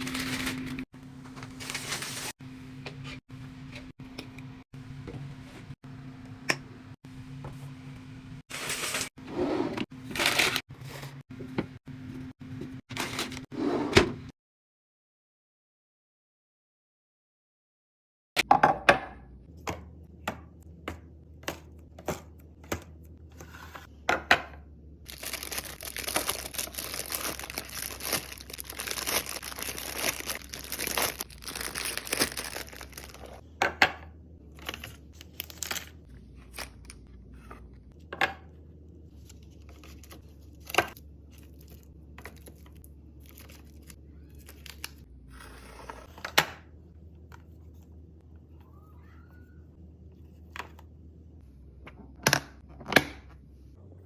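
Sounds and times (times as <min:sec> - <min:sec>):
packaging crinkling and tearing: 0:00.0 - 0:00.8, 0:25.1 - 0:33.4, 0:34.6 - 0:36.0, 0:41.4 - 0:45.0
items handled and set down: 0:20.9 - 0:34.0.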